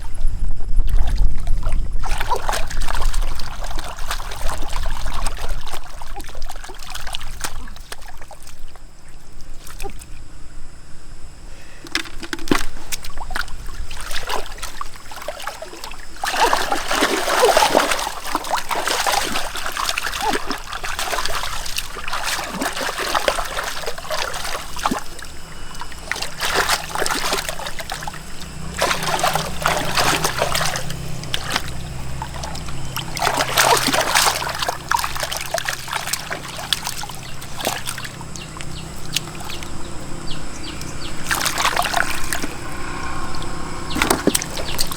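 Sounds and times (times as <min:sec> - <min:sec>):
water splashing and trickling: 0:00.8 - 0:10.4, 0:11.5 - 0:44.9.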